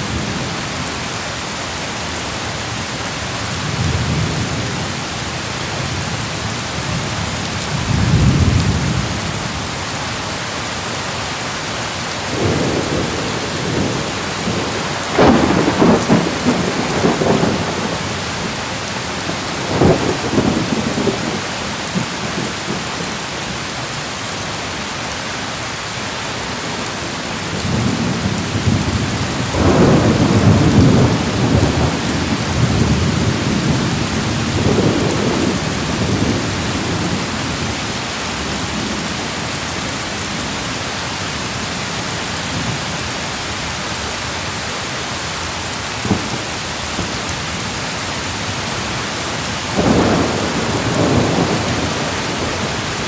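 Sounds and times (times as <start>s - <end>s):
heavy rain: 0.0s - 53.0s
rolling thunder: 12.3s - 22.8s, 27.5s - 37.8s, 46.0s - 47.2s, 49.7s - 53.0s.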